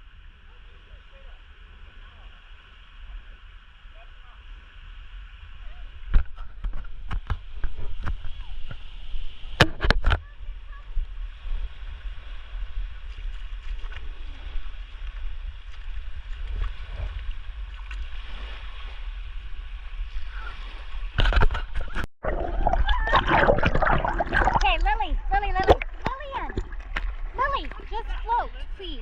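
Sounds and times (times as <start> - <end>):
water sloshing and gurgling: 5.0 - 29.0
water splashing: 5.9 - 29.0
steady low rumble: 22.0 - 29.0.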